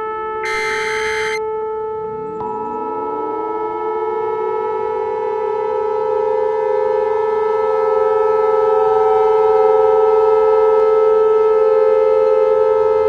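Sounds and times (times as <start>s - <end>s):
civil defense siren wailing: 0.5s - 1.4s.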